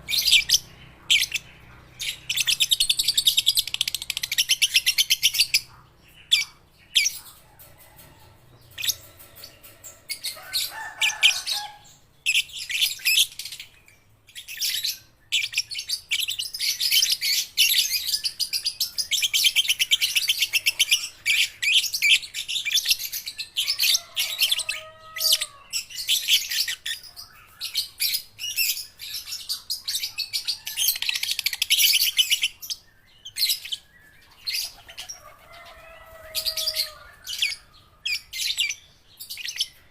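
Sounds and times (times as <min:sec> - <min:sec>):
lovebirds chirping shrilly: 0:00.0 - 0:07.4.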